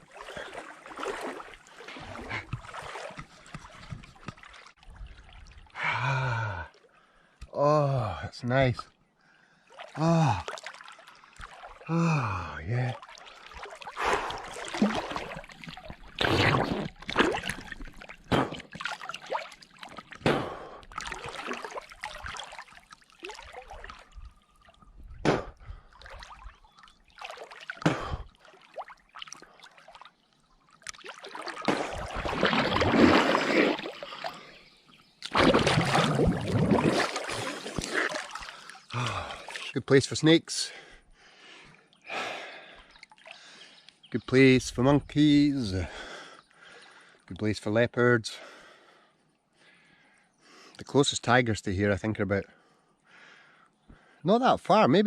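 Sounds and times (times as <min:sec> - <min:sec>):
water splashing from swimming: 0:00.0 - 0:07.4, 0:09.6 - 0:39.8, 0:41.4 - 0:44.0.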